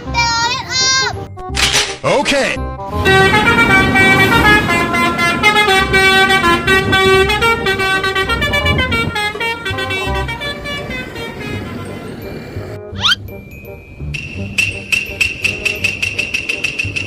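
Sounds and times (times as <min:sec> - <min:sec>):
bus horn playing a tune: 0:02.9 - 0:12.7.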